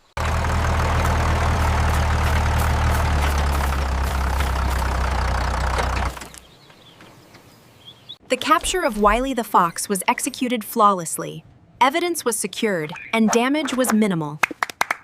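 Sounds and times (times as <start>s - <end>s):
engine idling with low rumble: 0.0s - 6.4s.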